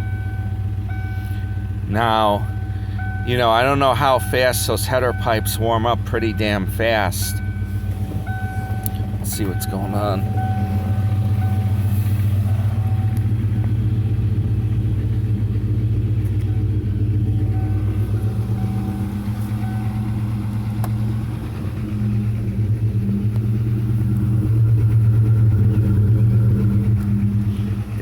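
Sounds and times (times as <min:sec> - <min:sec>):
car engine idling: 0:00.0 - 0:28.0.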